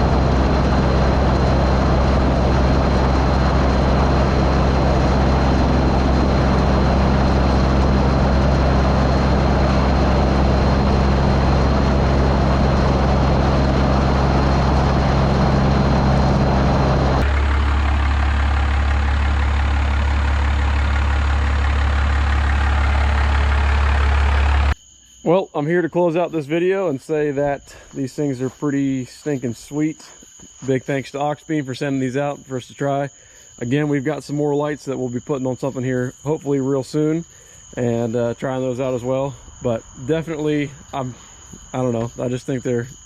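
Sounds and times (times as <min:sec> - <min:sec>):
engine idling: 0:00.0 - 0:24.8.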